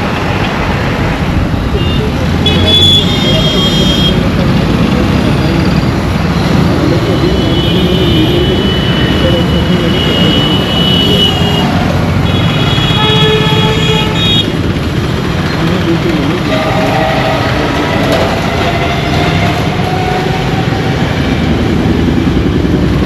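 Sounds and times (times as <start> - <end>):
dense road traffic: 0.0 - 23.0
vehicle horns: 1.7 - 4.8, 6.4 - 14.7, 16.2 - 21.2.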